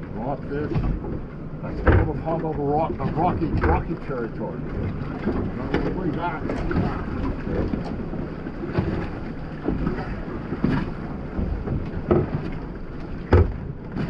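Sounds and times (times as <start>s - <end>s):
low rumble of water and boat: 0.0s - 14.0s
wind buffeting microphone: 0.0s - 14.0s
short knocks: 13.2s - 14.0s.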